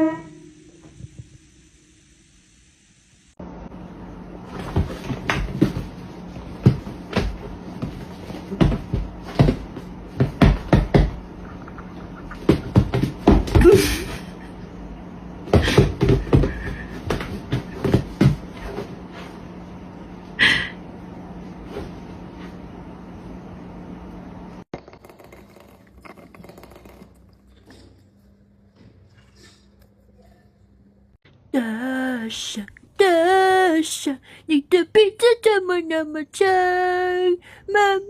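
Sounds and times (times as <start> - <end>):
steady low hum: 0.0 - 38.0
irregular knocks and thumps: 6.6 - 13.9.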